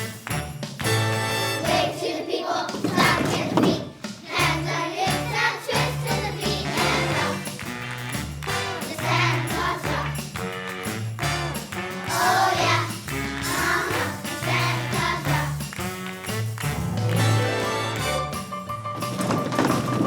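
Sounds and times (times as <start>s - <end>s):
children's choir singing: 1.4s - 7.7s, 8.6s - 10.4s, 12.0s - 15.7s
instrumental accompaniment: 2.8s - 20.0s.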